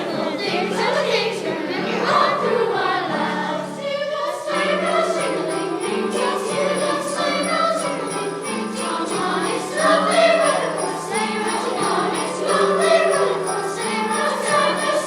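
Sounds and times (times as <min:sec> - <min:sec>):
youth choir singing: 0:00.0 - 0:15.0
sleigh bells ringing: 0:04.5 - 0:15.0.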